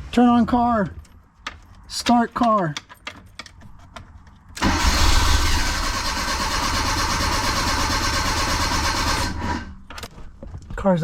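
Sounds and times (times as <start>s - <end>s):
car engine cranking: 4.6s - 10.0s.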